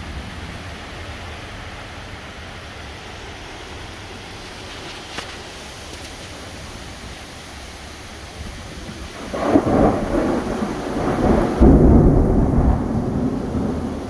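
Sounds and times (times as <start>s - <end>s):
rain hiss: 0.0s - 14.0s
thunder rumbling: 8.0s - 14.0s.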